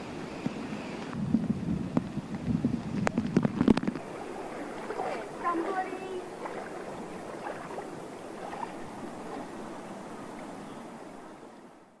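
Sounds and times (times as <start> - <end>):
floodwater rushing: 2.8 - 11.8.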